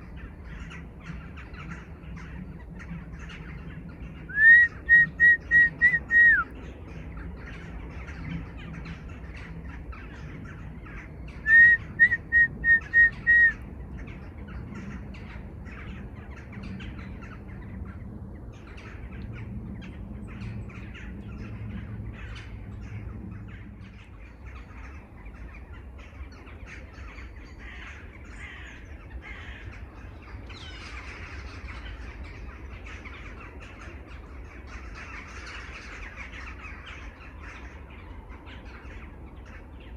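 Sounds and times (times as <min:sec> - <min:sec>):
many birds calling: 0:00.0 - 0:39.9
crows cawing: 0:04.3 - 0:06.4, 0:11.4 - 0:13.5, 0:27.6 - 0:30.0
bird whistled call: 0:04.3 - 0:06.6, 0:11.4 - 0:13.6.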